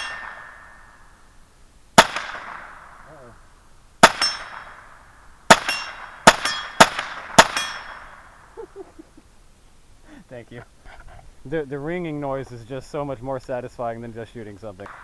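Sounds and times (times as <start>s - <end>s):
rifle shots: 0.0s - 1.1s, 2.0s - 3.3s, 4.0s - 8.5s
steel target ringing: 0.0s - 1.2s, 4.0s - 4.9s, 5.5s - 8.3s.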